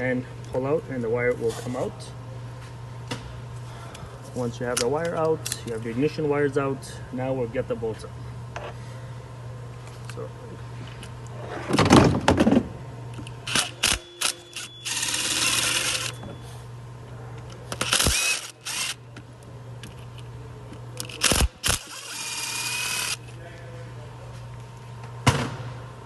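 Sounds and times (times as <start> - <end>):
power tool spinning bolts: 13.5 - 16.2, 17.8 - 19.0, 21.0 - 23.2.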